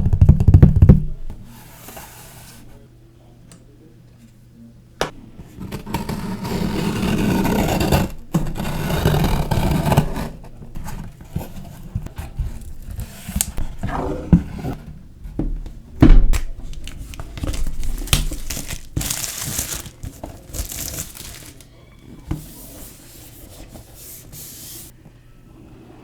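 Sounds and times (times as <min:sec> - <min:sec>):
loud thump: 0:16.0 - 0:16.5
cardboard packaging scraping: 0:16.6 - 0:21.7.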